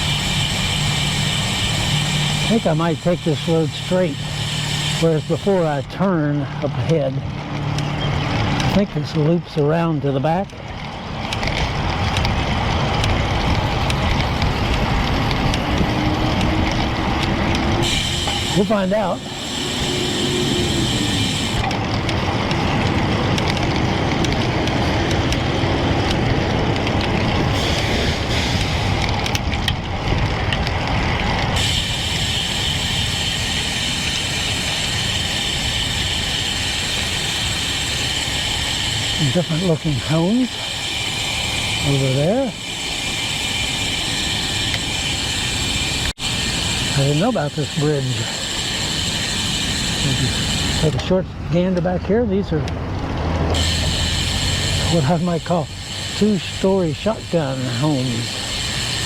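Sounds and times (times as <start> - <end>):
bicycle freewheel ratchet buzzing: 0.0 - 10.0, 10.6 - 51.2, 52.9 - 59.0
tyre and road noise: 0.0 - 59.0
wind rumbling on microphone: 10.6 - 18.5.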